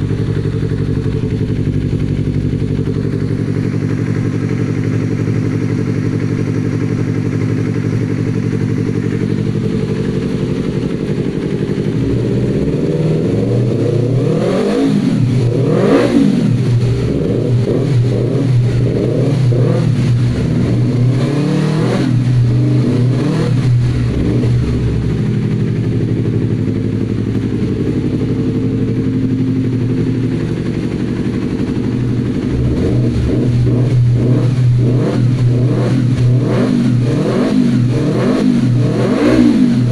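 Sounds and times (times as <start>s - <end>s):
motorcycle engine idling and revving: 0.0s - 39.9s.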